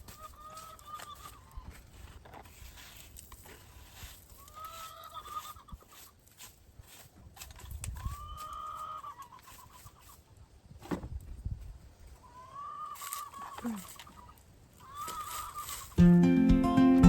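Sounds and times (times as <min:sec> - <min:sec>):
chickens calling: 0:00.0 - 0:02.9, 0:03.9 - 0:06.2, 0:07.9 - 0:10.6, 0:11.9 - 0:17.0.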